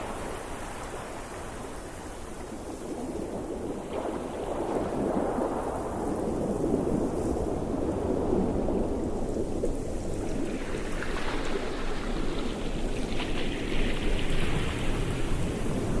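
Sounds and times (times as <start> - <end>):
low rumble of waves: 0.0 - 16.0.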